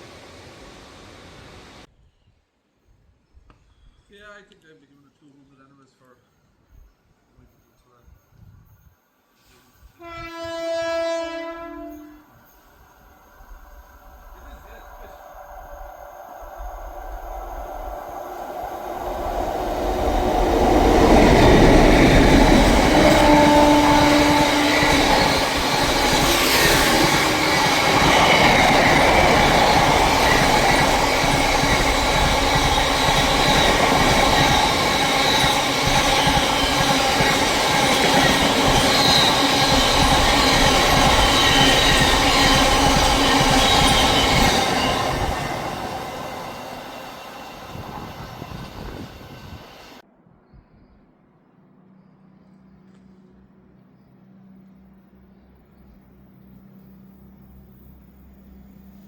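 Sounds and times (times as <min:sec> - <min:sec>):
train passing at speed: 0:00.0 - 0:01.9, 0:09.4 - 0:50.4
train horn note: 0:10.0 - 0:12.4, 0:22.2 - 0:28.0.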